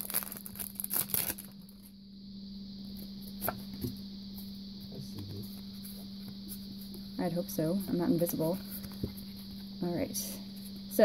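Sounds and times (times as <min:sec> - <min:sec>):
foil wrapper crinkling: 0:00.0 - 0:01.8.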